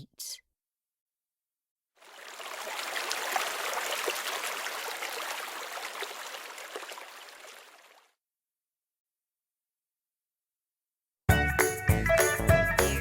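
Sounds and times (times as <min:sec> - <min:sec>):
stream water trickling: 0:02.0 - 0:08.2.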